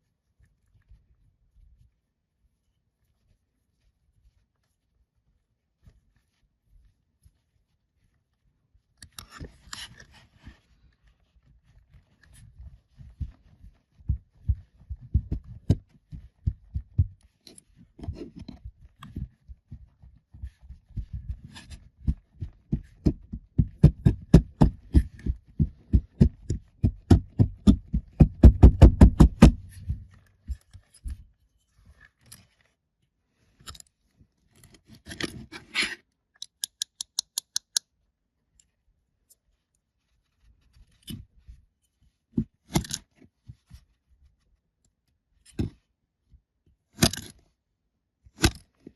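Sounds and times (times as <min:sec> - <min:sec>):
soft low thumps: 0:12.9 - 0:31.2.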